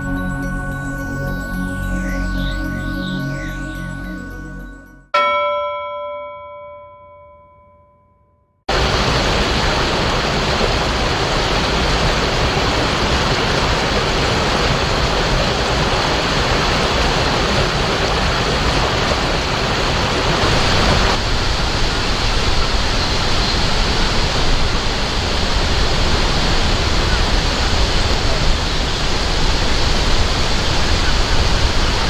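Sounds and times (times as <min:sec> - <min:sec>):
rushing water: 0:08.7 - 0:32.0.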